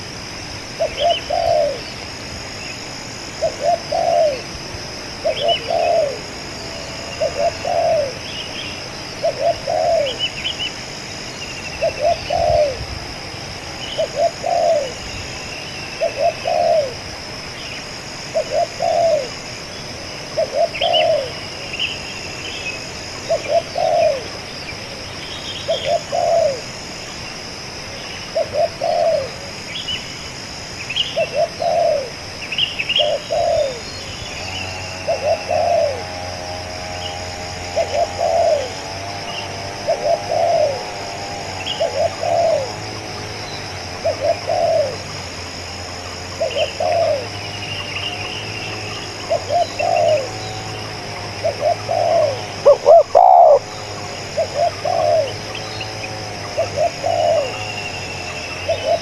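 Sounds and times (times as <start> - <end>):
dove cooing: 0.7 - 21.9, 22.6 - 25.0, 25.6 - 27.6, 28.3 - 29.6, 31.1 - 32.3, 33.0 - 59.0
small birds chirping: 0.8 - 59.0
steady high-pitched drone: 34.6 - 59.0.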